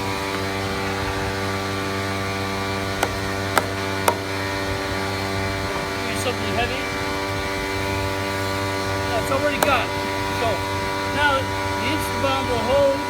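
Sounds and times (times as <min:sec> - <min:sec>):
heavy weight knocking on board: 0:03.0 - 0:04.4.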